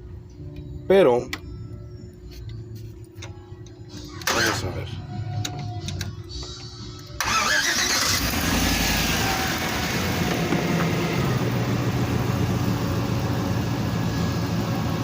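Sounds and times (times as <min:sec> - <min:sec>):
van engine running: 0:06.9 - 0:15.0.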